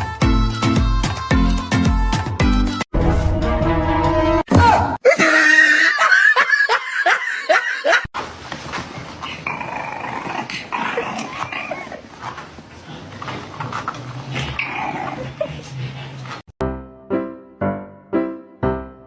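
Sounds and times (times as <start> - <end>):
dog whining: 9.3 - 12.4.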